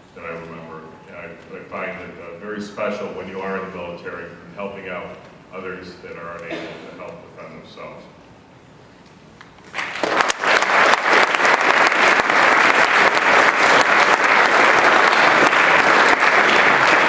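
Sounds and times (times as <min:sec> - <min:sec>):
audience applause: 0:09.7 - 0:17.0.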